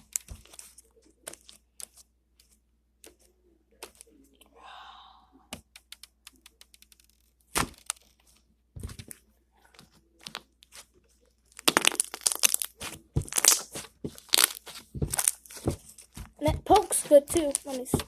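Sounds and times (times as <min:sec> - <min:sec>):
bead slime clicking and crackling: 0:05.6 - 0:08.1, 0:11.5 - 0:15.6.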